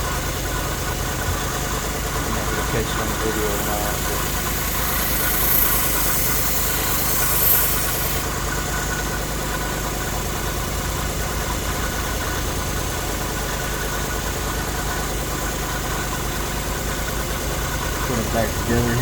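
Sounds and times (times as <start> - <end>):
belt grinder motor humming: 2.0 - 8.4
blade grinding on belt: 2.2 - 8.4.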